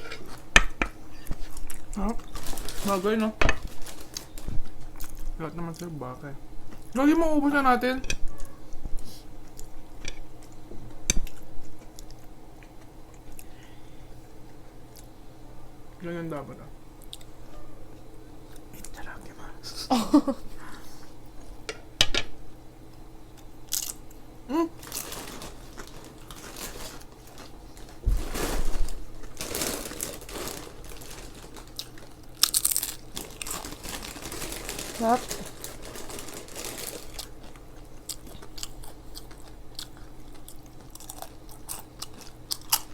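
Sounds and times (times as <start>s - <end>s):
soft chewing: 0.0s - 2.7s, 3.7s - 6.0s, 6.6s - 7.0s, 8.1s - 15.2s, 17.0s - 19.4s, 30.4s - 42.9s.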